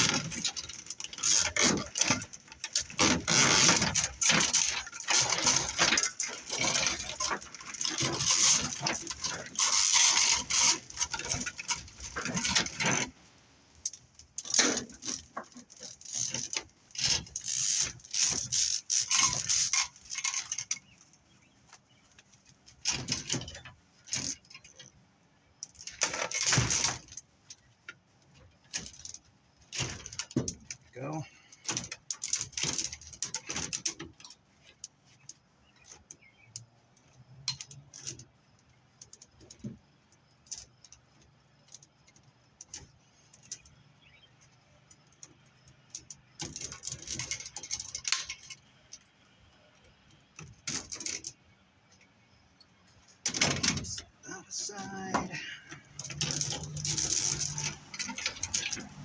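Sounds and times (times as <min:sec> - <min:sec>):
metal scrap clinking and rattling: 0:53.3 - 0:59.0.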